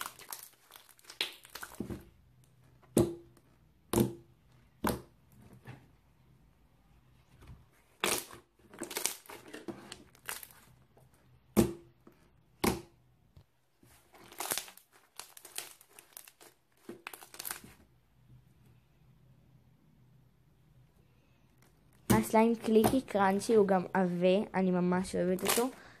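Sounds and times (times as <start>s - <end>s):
crunchy slime squished by hand: 0.0s - 2.2s, 7.9s - 10.8s, 13.9s - 17.8s, 25.3s - 25.8s.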